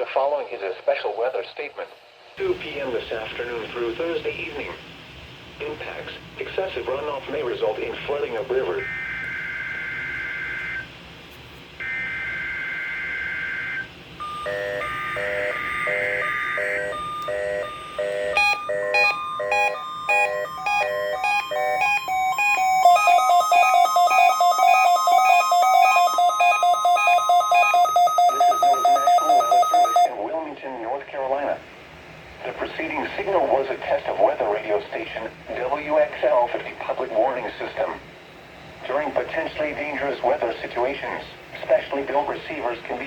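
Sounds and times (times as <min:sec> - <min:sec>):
steady warning alarm tone: 0:08.6 - 0:11.0, 0:11.8 - 0:30.2
warbling data bursts: 0:11.9 - 0:30.1
electronic alert beeping: 0:14.2 - 0:30.1
fast even beeping: 0:14.2 - 0:30.1.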